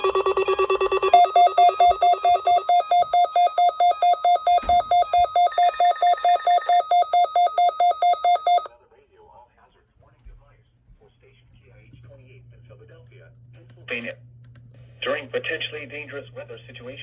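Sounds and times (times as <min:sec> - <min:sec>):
weather radio alarm beeping rapidly: 0:00.0 - 0:08.7.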